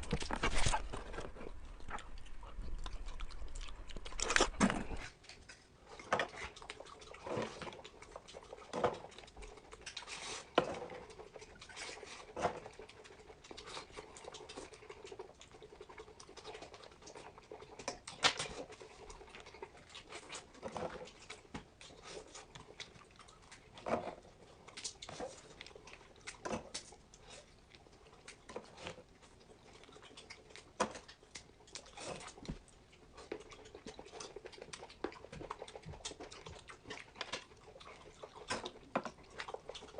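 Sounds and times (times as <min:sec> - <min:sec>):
person chewing and eating: 0:00.0 - 0:39.9.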